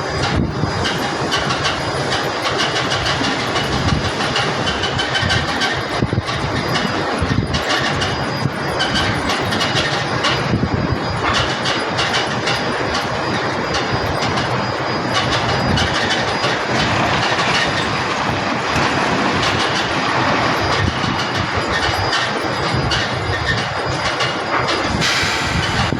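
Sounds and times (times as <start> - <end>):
rattling clicks and knocks: 0.1 - 25.9
concrete mixer truck rumbling: 8.7 - 25.9.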